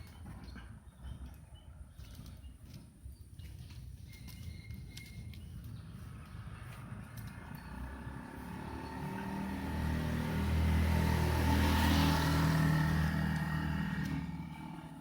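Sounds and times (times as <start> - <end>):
motor vehicle passing by: 5.6 - 15.0.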